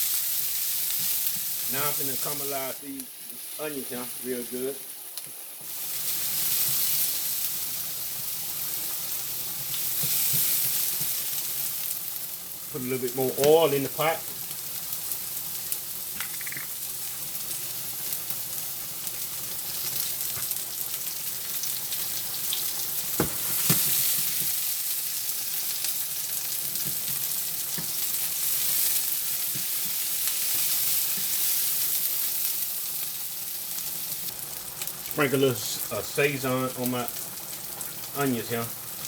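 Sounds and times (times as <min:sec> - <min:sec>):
onions sizzling in oil: 0:00.0 - 0:39.0
utensil knocking on pan: 0:23.2 - 0:23.9.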